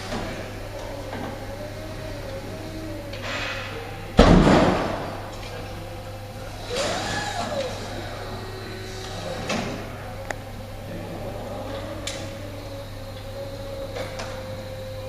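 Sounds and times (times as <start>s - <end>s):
forklift whine: 0.0s - 15.0s
steady low hum: 0.0s - 15.0s
loud ringing bang: 4.2s - 5.6s.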